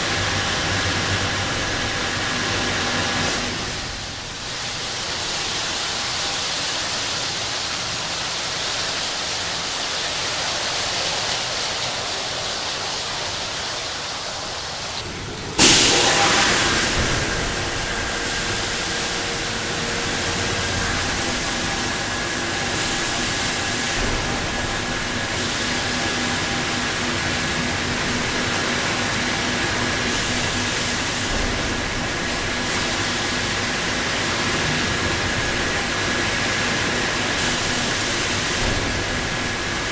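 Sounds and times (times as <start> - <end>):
nozzles spraying hiss: 13.0 - 39.9
machine low hum: 15.0 - 39.9.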